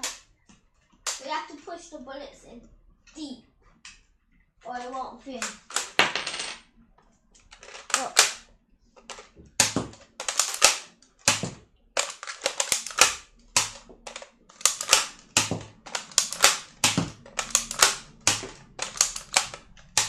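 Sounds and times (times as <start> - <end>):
toy blaster clicks and pops: 7.6 - 8.4, 9.0 - 20.0.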